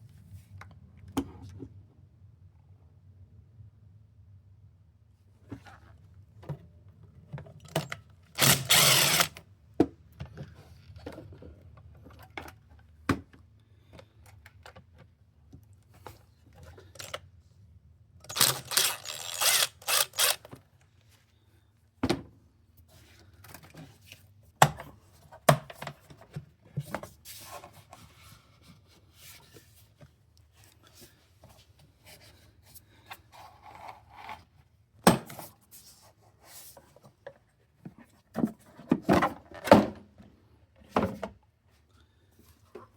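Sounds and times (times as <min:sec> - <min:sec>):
tools clicking and knocking: 0:07.6 - 0:09.4, 0:18.3 - 0:20.6
rapid power tool bursts: 0:08.4 - 0:09.4, 0:18.3 - 0:20.4.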